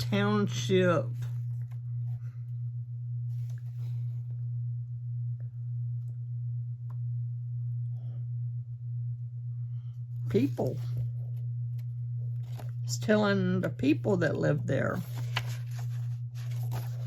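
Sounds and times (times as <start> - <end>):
steady low hum: 0.0 - 17.0
paper rustling and clicking: 14.9 - 17.0.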